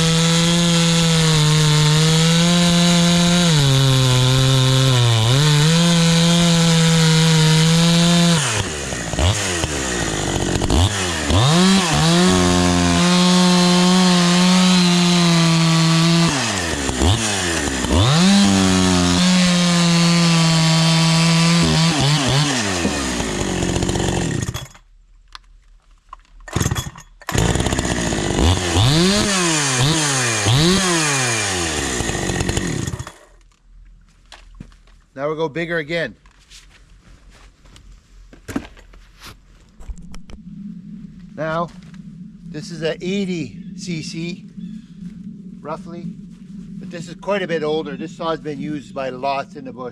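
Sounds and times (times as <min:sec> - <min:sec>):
chainsaw revving: 0:00.0 - 0:24.8, 0:26.5 - 0:33.4.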